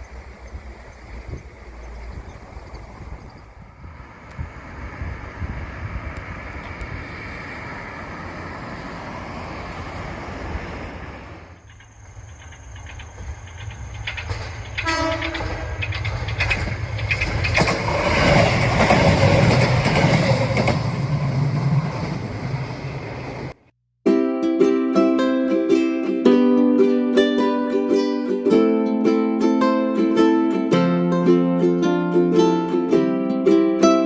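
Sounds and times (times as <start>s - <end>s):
wheels running on rails: 0.0s - 23.6s
railcar engine: 0.0s - 23.7s
train horn blast: 14.8s - 15.8s.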